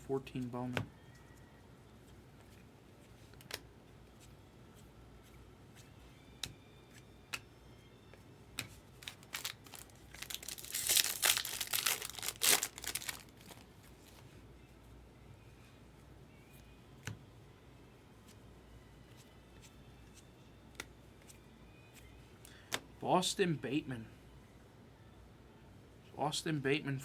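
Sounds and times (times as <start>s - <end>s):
foil wrapper tearing and crumpling: 9.0s - 13.6s.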